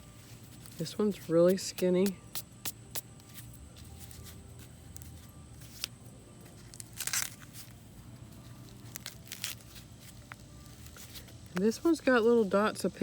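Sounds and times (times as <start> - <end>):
corn husk tearing: 0.3 - 12.1
leaves and husk crackling: 3.2 - 13.0.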